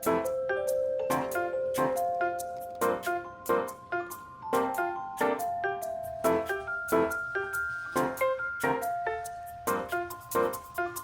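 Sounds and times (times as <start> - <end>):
light bouncy tune of struck notes: 0.0 - 11.0.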